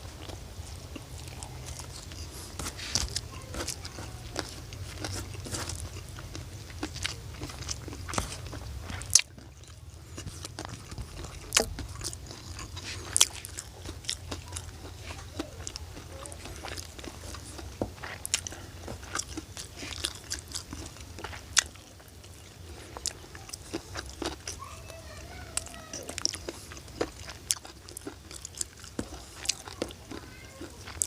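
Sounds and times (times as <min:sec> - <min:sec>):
steady low hum: 0:00.0 - 0:24.2
crunching and chewing food: 0:00.0 - 0:31.0.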